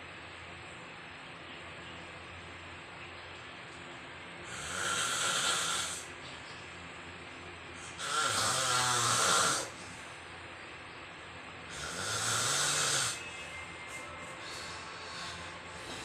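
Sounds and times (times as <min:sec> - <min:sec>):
person snoring loudly: 0:04.5 - 0:06.1, 0:07.8 - 0:09.8, 0:11.7 - 0:13.3.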